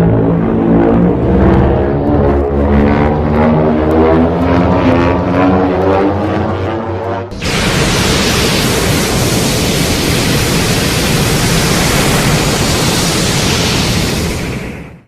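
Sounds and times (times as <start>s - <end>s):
loud rushing hiss: 7.3s - 15.0s.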